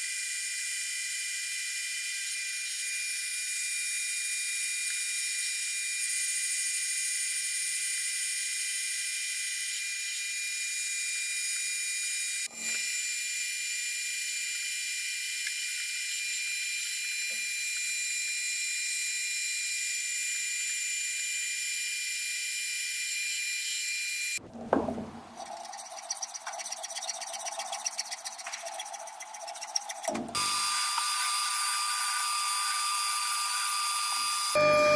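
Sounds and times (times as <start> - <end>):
metal lathe whining: 25.4 - 34.9.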